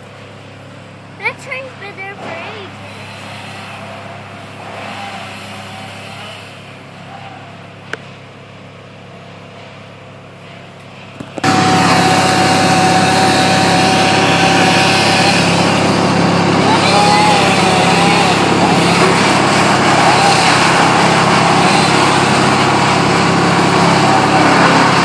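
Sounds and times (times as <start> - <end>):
small engine humming: 0.0 - 25.0
chainsaw running at full throttle: 1.2 - 3.8, 11.2 - 25.0.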